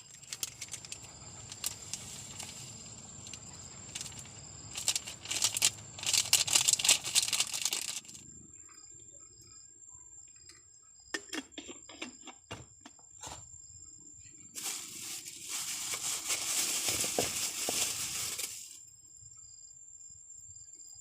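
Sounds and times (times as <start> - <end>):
dense crackling and rustling: 0.0 - 8.2, 14.6 - 18.8.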